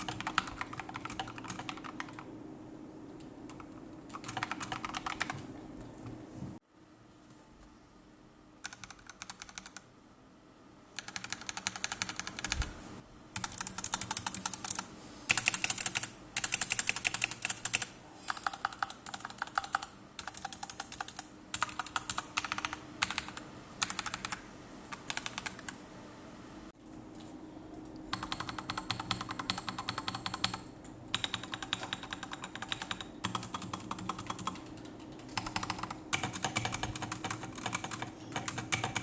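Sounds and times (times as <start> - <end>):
mechanical keyboard keystrokes: 3.5 - 5.4, 8.6 - 9.8, 11.0 - 12.8, 13.4 - 25.8, 28.1 - 39.0.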